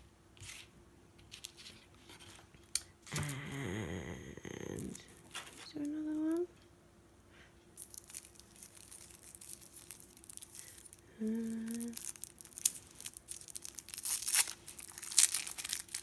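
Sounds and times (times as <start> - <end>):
person humming: 3.1 - 6.5, 11.1 - 12.1
tissue paper crinkling: 7.8 - 16.0.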